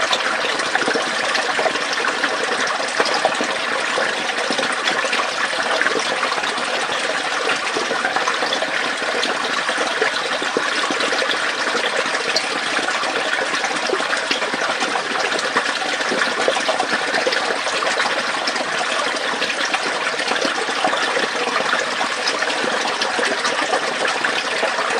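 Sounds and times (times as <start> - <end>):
water flowing through a pipe: 0.0 - 24.9.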